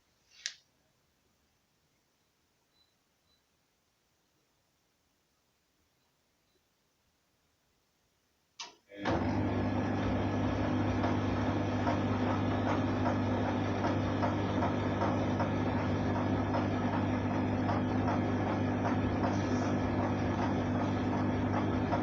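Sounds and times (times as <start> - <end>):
motor humming: 9.0 - 22.0.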